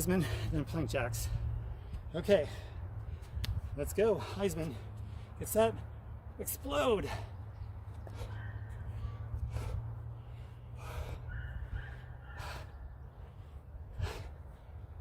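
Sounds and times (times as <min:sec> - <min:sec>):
man breathing hard: 0:00.0 - 0:00.7, 0:01.3 - 0:05.4, 0:07.1 - 0:15.0
steady low hum: 0:07.1 - 0:15.0.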